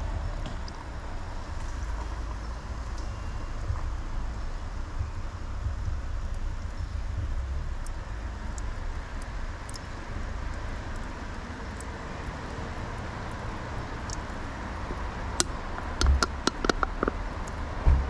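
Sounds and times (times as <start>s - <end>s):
car driving rumble: 0.0s - 18.0s
sharp clicks: 15.4s - 17.6s.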